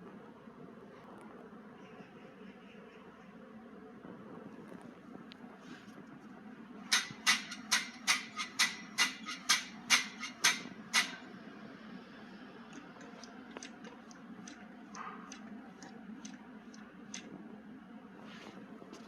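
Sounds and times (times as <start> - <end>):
steady low hum: 0.0 - 19.0
sharp knocks: 6.9 - 11.2.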